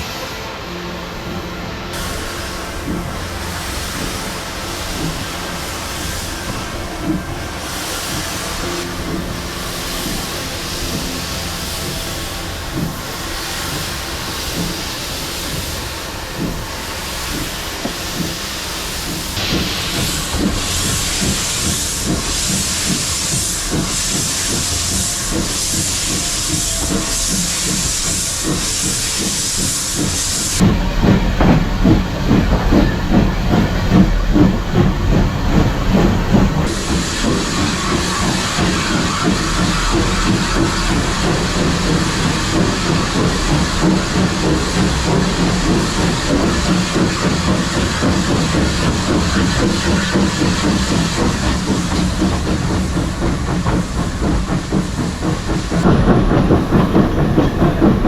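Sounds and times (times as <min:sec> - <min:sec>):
steam hissing: 0:00.0 - 0:58.0
steam train running: 0:00.0 - 0:58.0.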